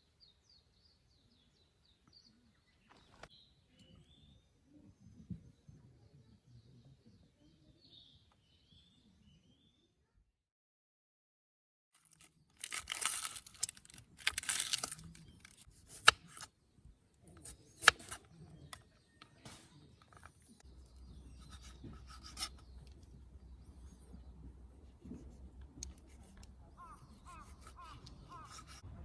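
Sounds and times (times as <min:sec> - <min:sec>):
rustling and tearing: 0:12.0 - 0:16.5, 0:17.3 - 0:18.3, 0:25.1 - 0:28.8.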